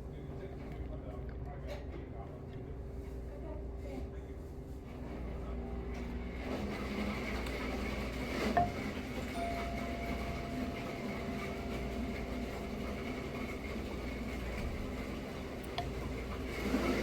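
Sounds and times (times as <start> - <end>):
restaurant room hum: 0.0 - 17.0
utensil clinking against dish: 8.4 - 14.9, 15.6 - 17.0.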